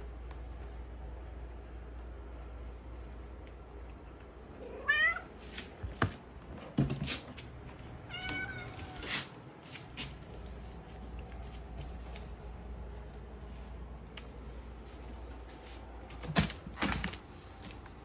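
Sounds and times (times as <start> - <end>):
cat meowing: 4.6 - 5.4, 8.1 - 9.1.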